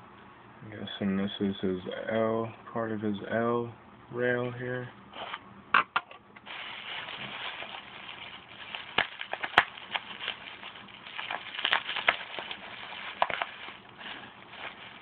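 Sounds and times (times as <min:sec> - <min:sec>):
plastic packaging crinkling: 0:06.4 - 0:15.0.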